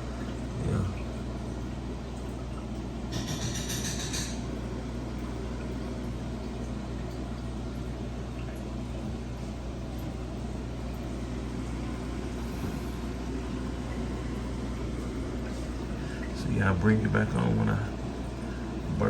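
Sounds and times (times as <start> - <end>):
motor humming: 0.0 - 19.0.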